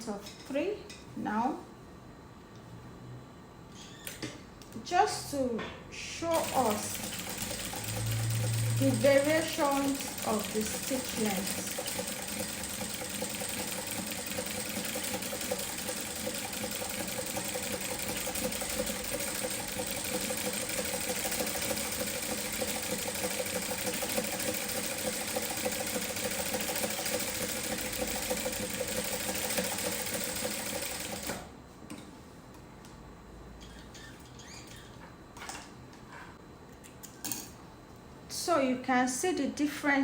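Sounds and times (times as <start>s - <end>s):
sewing machine running: 6.4s - 31.5s.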